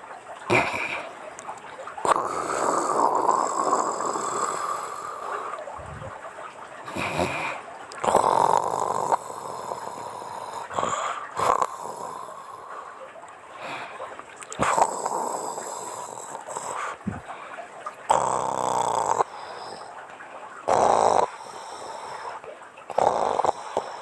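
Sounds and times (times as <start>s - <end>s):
woman snoring: 2.1s - 4.7s, 6.9s - 12.2s, 18.1s - 19.3s, 20.7s - 21.3s, 22.9s - 23.9s.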